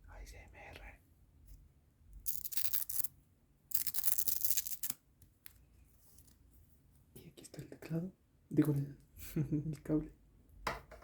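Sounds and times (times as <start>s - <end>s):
hook-and-loop strap ripping open: 3.7s - 5.0s.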